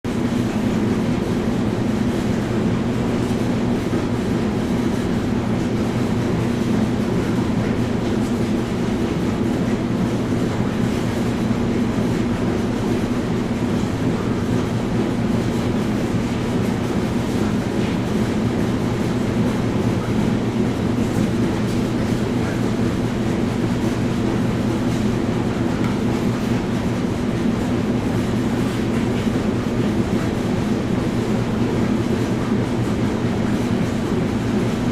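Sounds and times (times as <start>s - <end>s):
washing machine running: 0.0s - 34.9s.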